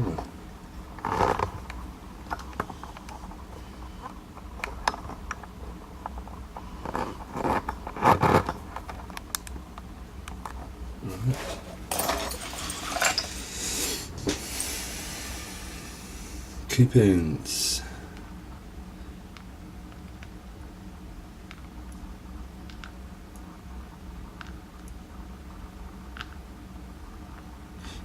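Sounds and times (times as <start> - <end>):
metal scraping: 11.1 - 14.8.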